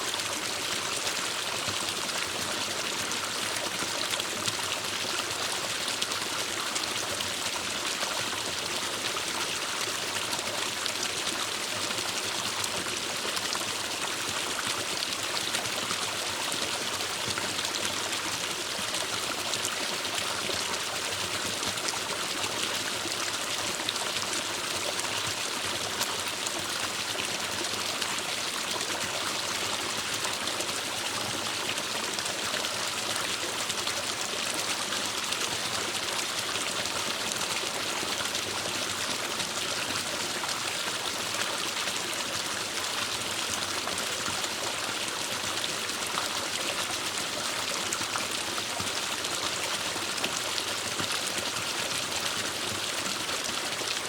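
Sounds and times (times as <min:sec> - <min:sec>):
stream flowing over rocks: 0:00.0 - 0:54.0.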